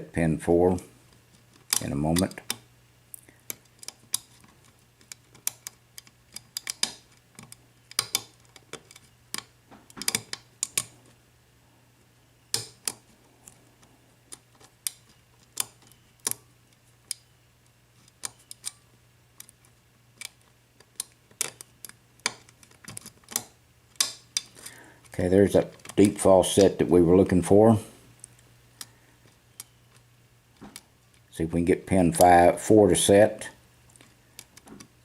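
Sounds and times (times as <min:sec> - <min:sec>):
faint low hum: 0:00.0 - 0:35.0
lock pick metallic clicks: 0:05.0 - 0:10.9, 0:18.0 - 0:18.8, 0:20.2 - 0:24.8.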